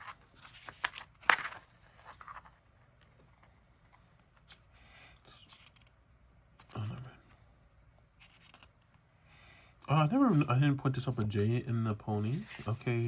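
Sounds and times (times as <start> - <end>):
paper pages rustling: 0.0 - 4.7, 5.5 - 5.9, 8.2 - 8.8, 10.0 - 11.4, 12.1 - 13.0.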